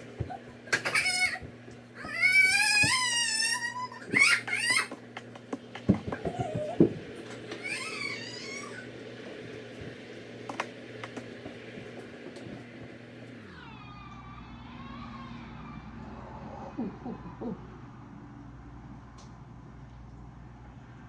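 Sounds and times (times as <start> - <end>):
steady low hum: 0.0 - 21.0
child fussy squealing: 0.8 - 5.0, 7.5 - 8.9.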